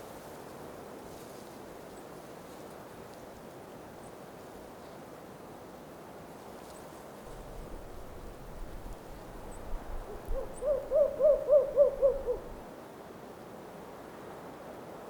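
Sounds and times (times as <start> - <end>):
wind noise: 7.3 - 12.7
owl hooting: 10.1 - 12.6.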